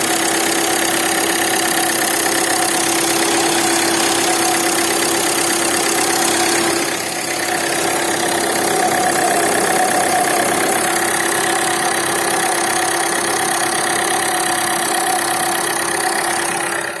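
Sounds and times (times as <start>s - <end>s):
diesel engine idling: 0.0s - 17.0s
steady tonal drone: 4.2s - 15.2s
steady tone: 4.6s - 17.0s.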